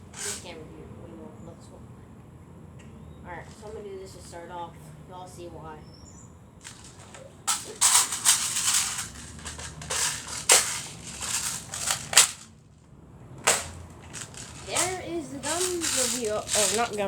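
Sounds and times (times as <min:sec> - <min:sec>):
rattling and scraping: 0:00.0 - 0:00.6, 0:06.6 - 0:12.6, 0:13.4 - 0:17.0
rifle clacks and clicks: 0:06.6 - 0:12.5, 0:13.4 - 0:17.0.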